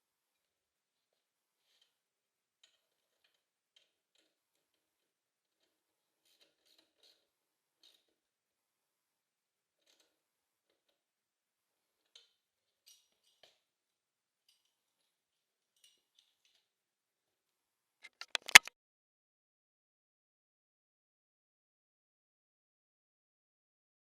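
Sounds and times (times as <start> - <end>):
sharp clicks: 18.1 - 18.7.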